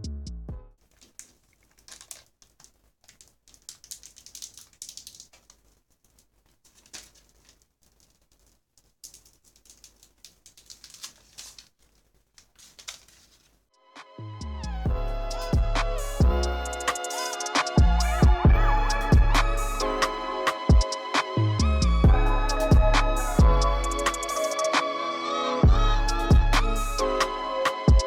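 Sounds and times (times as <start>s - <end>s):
computer keyboard typing: 1.0s - 5.6s.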